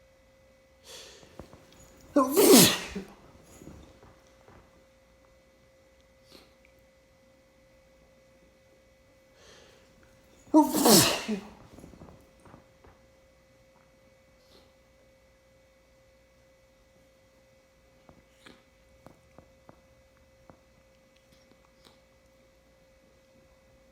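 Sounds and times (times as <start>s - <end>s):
person sneezing: 2.1s - 3.6s, 10.5s - 11.8s.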